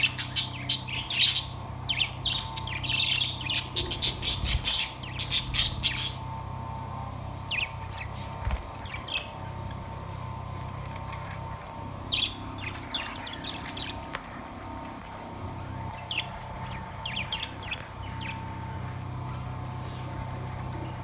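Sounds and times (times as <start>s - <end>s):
budgerigars chirping: 0.0s - 6.4s, 7.4s - 9.5s, 12.1s - 14.1s, 15.9s - 20.2s
steady low hum: 0.0s - 21.0s.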